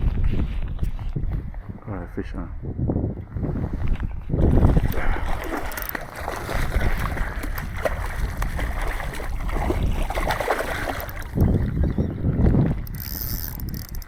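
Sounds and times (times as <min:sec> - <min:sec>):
water splashing and sloshing: 0:04.4 - 0:14.0
sharp clicks and knocks: 0:12.8 - 0:14.0.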